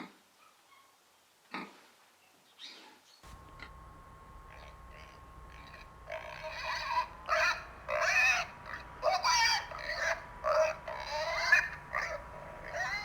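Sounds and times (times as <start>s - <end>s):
pigs squealing: 4.5s - 13.0s.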